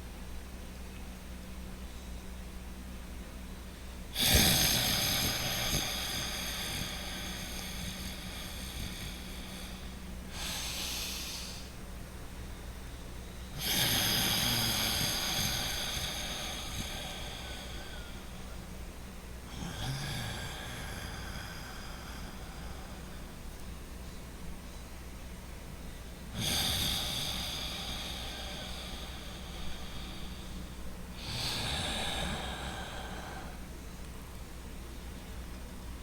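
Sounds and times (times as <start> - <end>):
breathing through the nose: 4.2 - 11.8, 13.6 - 18.6, 26.4 - 33.7.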